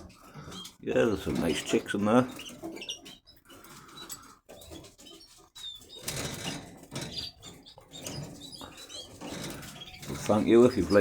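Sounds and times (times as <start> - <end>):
canaries chirping: 0.0 - 11.0.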